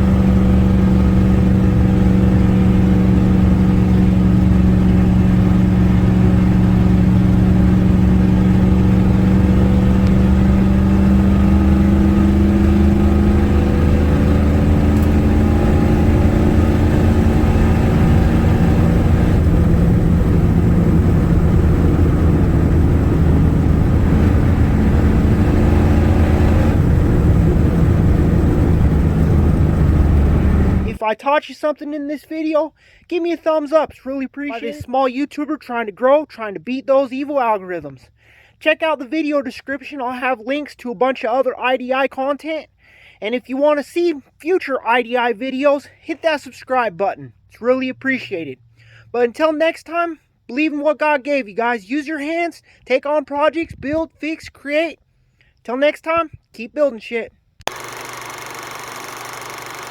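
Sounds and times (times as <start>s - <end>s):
diesel pickup engine running: 0.0s - 31.0s, 57.7s - 59.9s.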